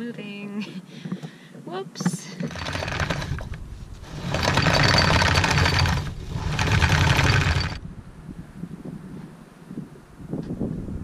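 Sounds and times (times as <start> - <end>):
anchor chain rattling: 2.0 - 7.8.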